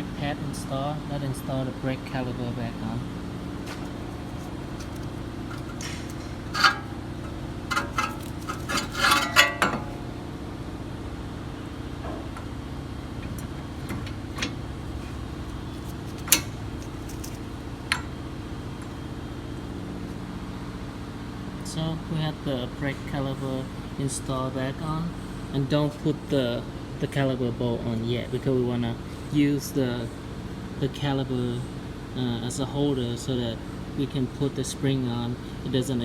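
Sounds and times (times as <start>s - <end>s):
steady background hum: 0.0s - 36.0s
metal clinks and knocks: 3.9s - 10.1s.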